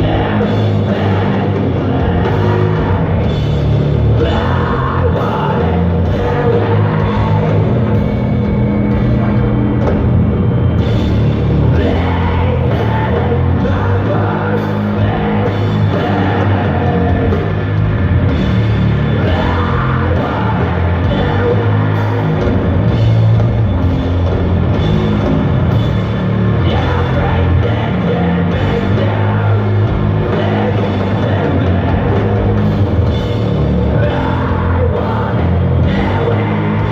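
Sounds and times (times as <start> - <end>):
bass guitar: 0.0 - 36.9
drums: 0.0 - 36.9
heavy distorted guitars: 0.0 - 36.9
person singing: 4.1 - 7.8.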